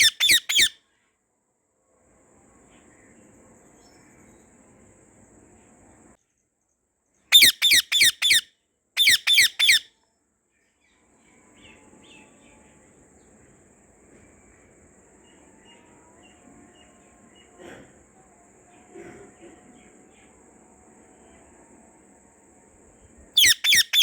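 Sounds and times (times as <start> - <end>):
parakeet screeching calls: 0.0 - 0.8, 7.3 - 8.4, 9.0 - 9.9, 23.4 - 24.0.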